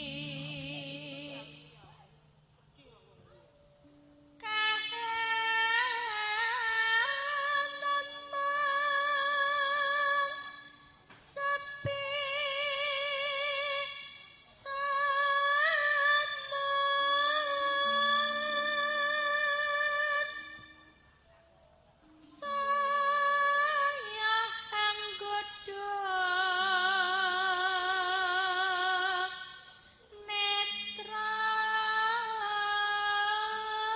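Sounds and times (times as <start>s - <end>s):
woman singing with vibrato: 0.0s - 1.9s, 4.4s - 20.9s, 22.2s - 33.9s
faint low steady tones: 0.0s - 28.4s.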